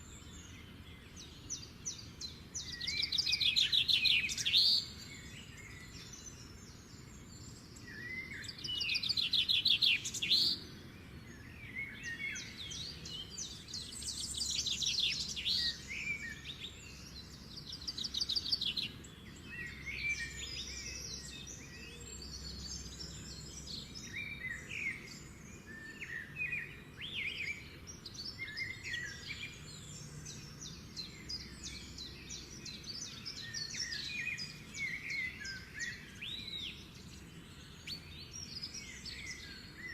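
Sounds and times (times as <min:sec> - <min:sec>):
birds chirping and trilling: 0:00.0 - 0:39.9.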